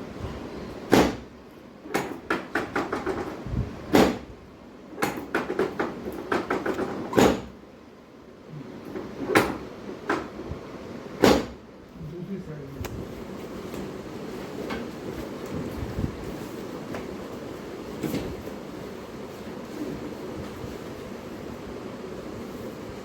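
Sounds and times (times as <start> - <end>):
sharp knocks and thuds: 0.9 - 1.3.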